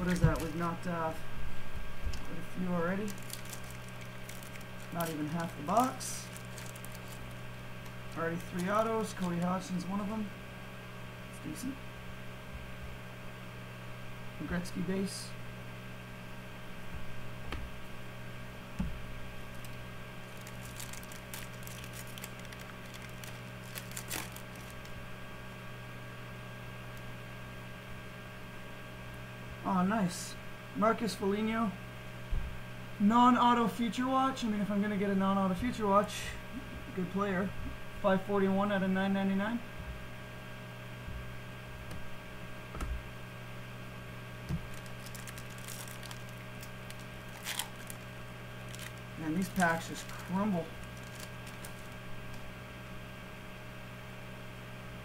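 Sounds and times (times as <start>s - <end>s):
foil wrappers crinkling: 0.0s - 0.9s, 2.1s - 9.7s, 19.4s - 25.0s, 44.5s - 52.5s
steady electrical hum: 0.0s - 55.0s.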